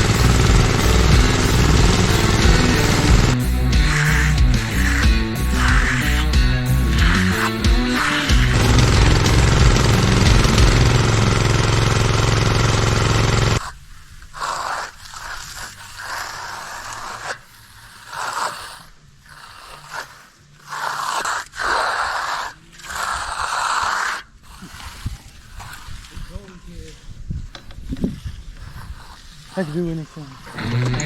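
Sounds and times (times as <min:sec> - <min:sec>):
background music: 0:00.0 - 0:11.3, 0:30.6 - 0:31.0
hand tool scraping over concrete: 0:00.0 - 0:31.0.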